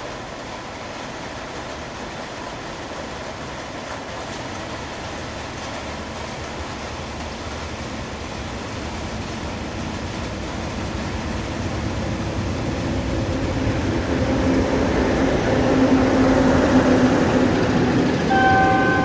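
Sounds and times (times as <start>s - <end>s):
freight train rumble: 0.0s - 19.0s
low steady tone: 18.3s - 19.0s.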